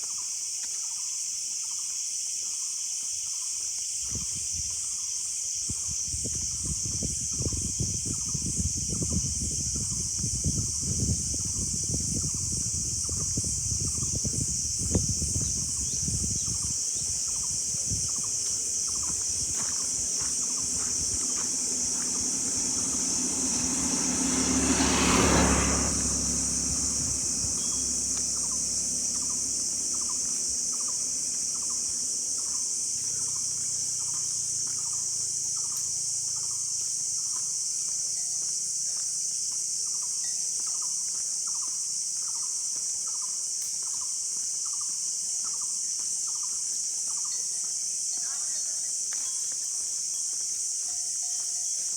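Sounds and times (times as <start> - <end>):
high-pitched insect chorus: 0.0 - 51.9
vehicle passing: 8.0 - 38.1.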